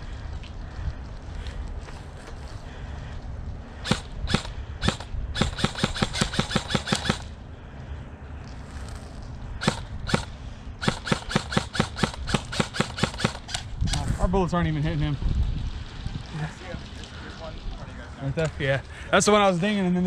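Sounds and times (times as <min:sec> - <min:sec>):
airsoft rifle firing: 0:03.8 - 0:07.4, 0:09.6 - 0:13.7.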